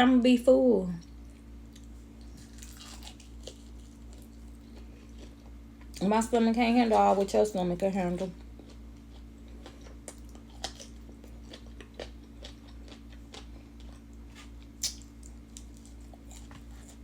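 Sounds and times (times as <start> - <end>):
steady low hum: 0.0 - 17.0
person chewing food: 1.2 - 6.0, 8.4 - 17.0.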